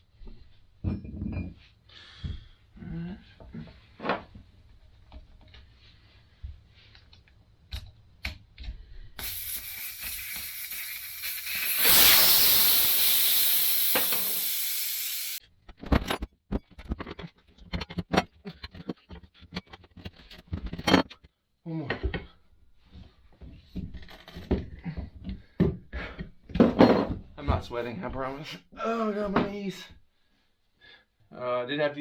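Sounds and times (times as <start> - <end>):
air hissing out of a tire: 9.2 - 15.4
tools clicking and knocking: 15.6 - 21.3.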